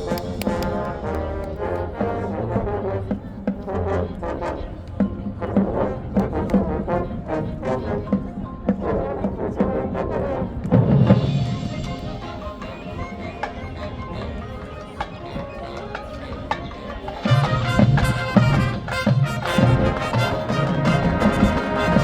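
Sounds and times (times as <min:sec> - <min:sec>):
drum and percussion beat: 0:00.0 - 0:01.6, 0:16.5 - 0:22.0
marching band brass: 0:00.0 - 0:22.0.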